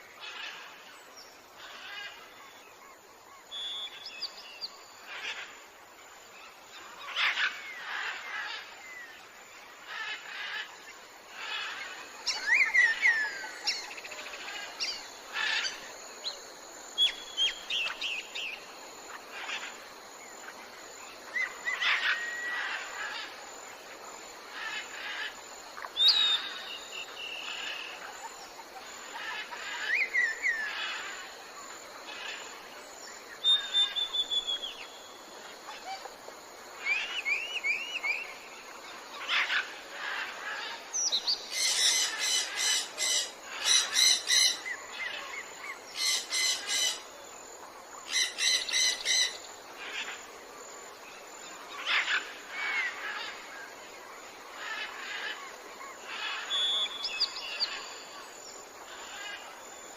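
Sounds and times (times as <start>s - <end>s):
faint steady hiss: 0.0s - 59.9s
birds chirping and trilling: 0.2s - 59.9s.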